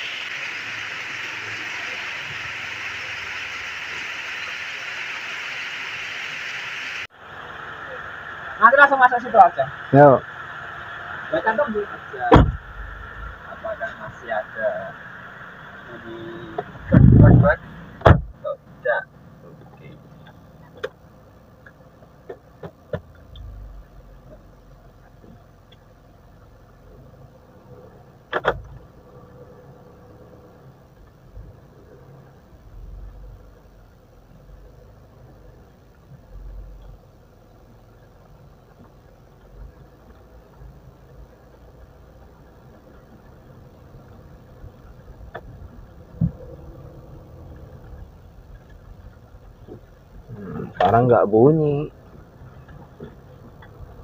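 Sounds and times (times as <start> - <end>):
car engine running low: 9.5 - 54.0
thump: 12.3 - 12.6, 16.9 - 17.4, 18.0 - 18.4.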